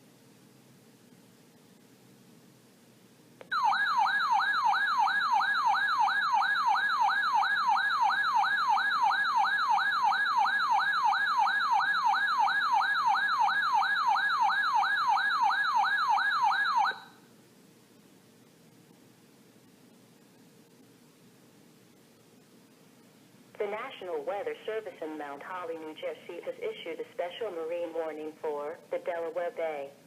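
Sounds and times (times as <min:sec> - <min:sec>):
electronic alert siren: 0:03.4 - 0:17.2.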